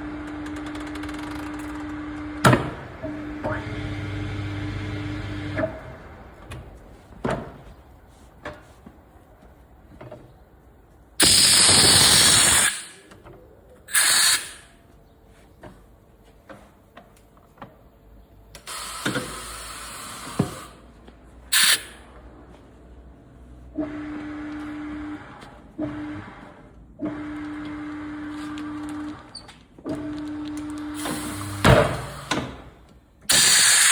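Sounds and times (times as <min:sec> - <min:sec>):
compressed air hissing: 0:13.9 - 0:14.7, 0:21.5 - 0:22.0, 0:33.3 - 0:33.9.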